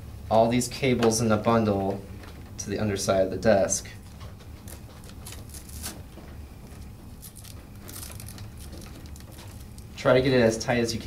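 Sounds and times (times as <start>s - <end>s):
rustling and crinkling of cables: 1.7s - 2.8s, 3.8s - 10.6s.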